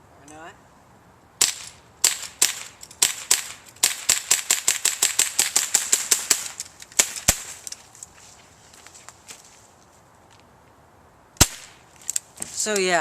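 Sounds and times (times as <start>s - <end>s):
bb revolver firing sharp cracks: 1.4s - 7.5s, 11.4s - 11.8s.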